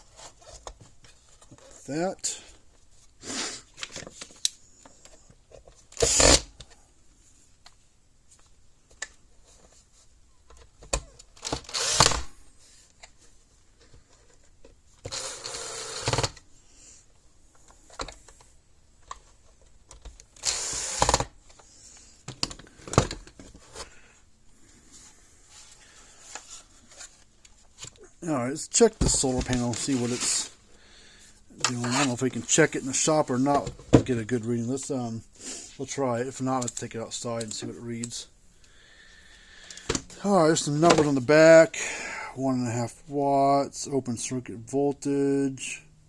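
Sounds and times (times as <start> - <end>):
power drill bursts: 6.0 - 6.5, 11.5 - 12.3, 15.1 - 16.3, 20.4 - 21.3.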